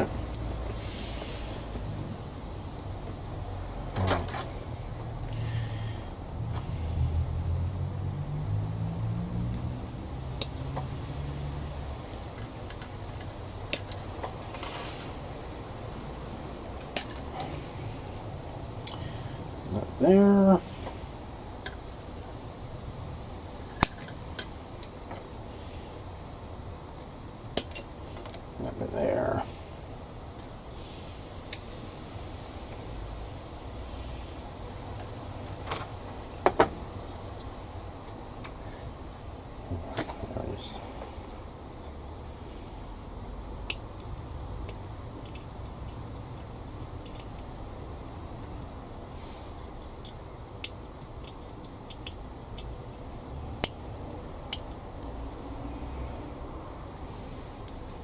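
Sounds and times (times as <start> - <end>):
steady low rumble: 0.0 - 51.6
low background hum: 0.0 - 58.0
faint ticks of plastic parts: 43.2 - 47.8, 49.5 - 55.8.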